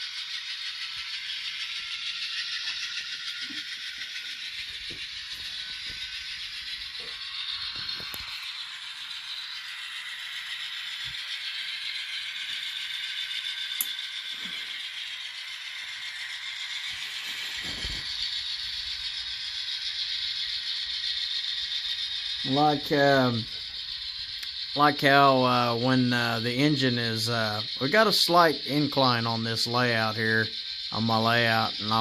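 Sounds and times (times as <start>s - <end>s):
model train diesel engine sound: 0.0s - 32.0s
model train rattling on track: 0.0s - 32.0s
sharp click: 13.8s - 14.0s.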